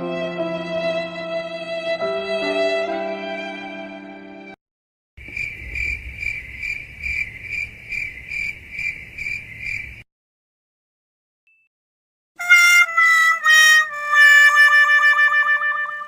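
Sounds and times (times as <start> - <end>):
cricket chirping: 5.2 - 10.0.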